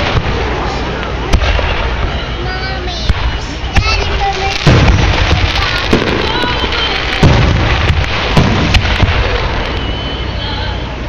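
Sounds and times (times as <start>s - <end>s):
fireworks booming: 0.0s - 11.0s
fireworks crackling: 0.0s - 11.0s.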